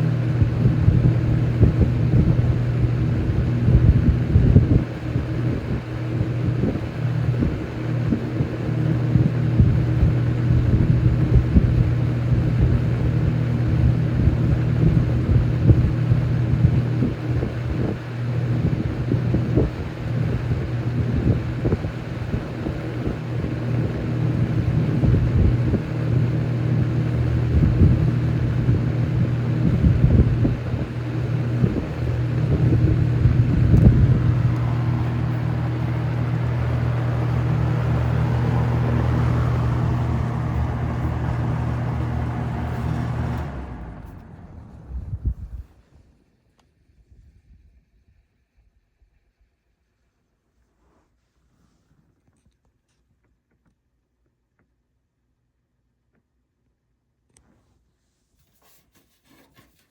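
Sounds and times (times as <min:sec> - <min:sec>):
airflow buffeting microphone: 0:00.0 - 0:46.2
box fan motor hum: 0:00.0 - 0:46.2.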